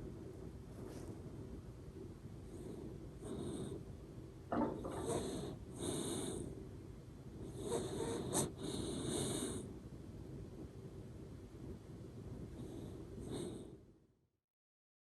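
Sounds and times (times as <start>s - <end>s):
dog snoring with whistling breaths: 2.5s - 3.8s, 4.8s - 6.5s, 7.4s - 9.7s, 12.6s - 13.9s.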